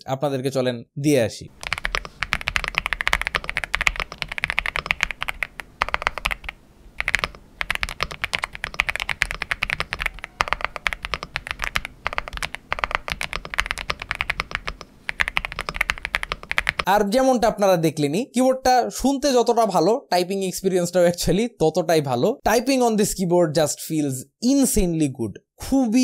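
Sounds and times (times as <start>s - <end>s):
dampened keyboard typing: 1.5s - 16.9s.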